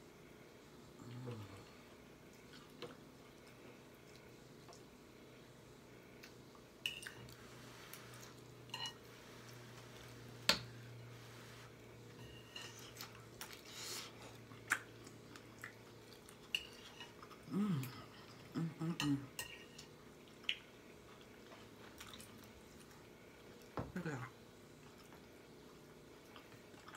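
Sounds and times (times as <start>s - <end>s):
chewing and mouth smacking: 12.8s - 18.5s, 19.8s - 23.7s.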